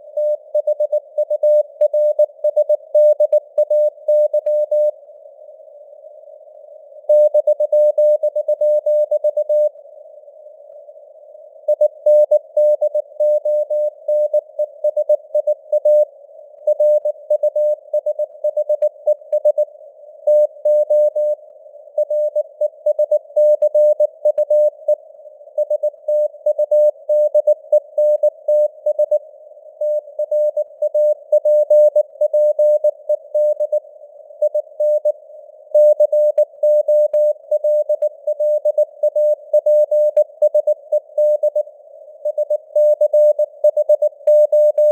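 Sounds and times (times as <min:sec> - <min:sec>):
morse code tone: 0:42.3 - 0:44.9.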